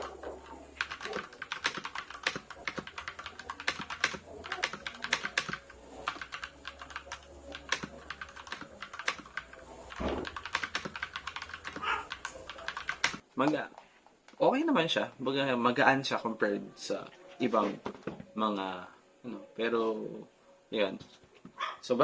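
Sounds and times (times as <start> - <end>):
mechanical keyboard key clacks: 0.8 - 13.2.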